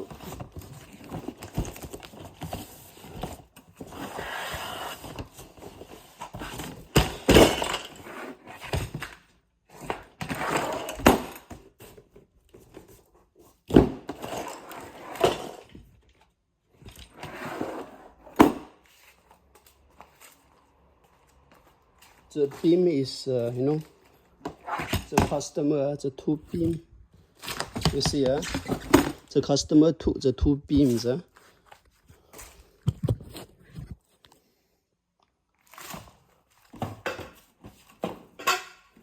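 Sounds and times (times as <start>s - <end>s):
cardboard box rustling and scraping: 0.0s - 9.1s, 26.5s - 29.3s.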